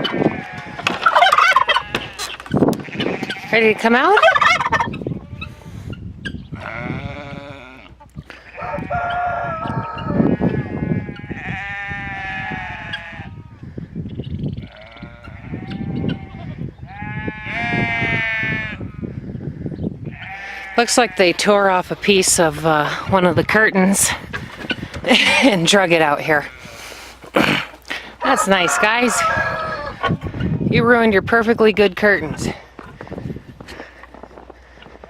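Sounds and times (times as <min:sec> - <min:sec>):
goats bleating: 0:00.0 - 0:04.1, 0:06.6 - 0:08.8, 0:09.7 - 0:13.6, 0:14.6 - 0:18.9, 0:20.1 - 0:21.5, 0:26.1 - 0:30.1.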